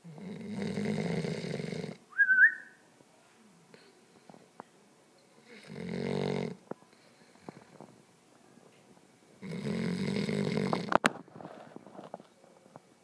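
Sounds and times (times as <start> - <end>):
puppy snoring: 0.0 - 2.0, 5.4 - 6.6, 9.4 - 11.1
short high whistle: 2.1 - 2.8.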